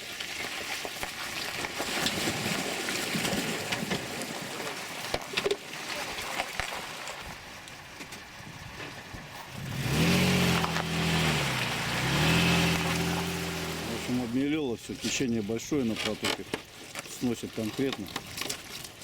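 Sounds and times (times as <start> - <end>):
vehicle rattling and crunching: 7.8 - 19.0
engine revving: 9.4 - 14.4.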